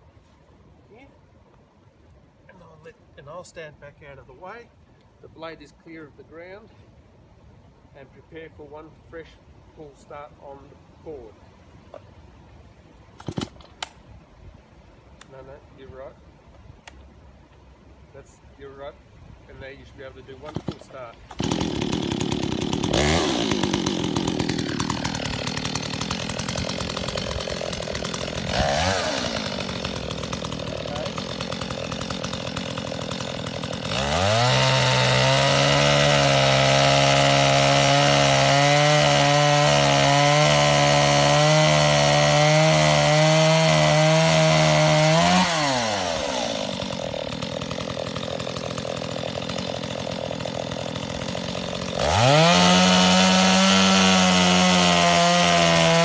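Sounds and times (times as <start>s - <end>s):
chainsaw idling and revving: 19.6s - 56.0s.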